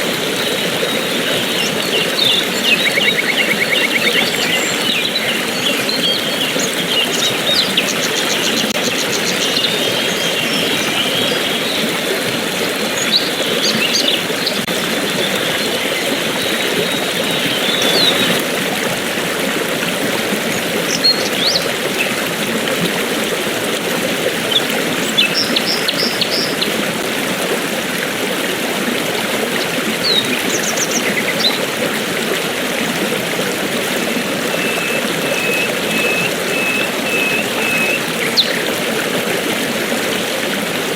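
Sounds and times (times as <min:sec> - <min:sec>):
stream water flowing: 0:00.0 - 0:40.9
small birds chirping: 0:00.4 - 0:11.9, 0:34.5 - 0:38.7.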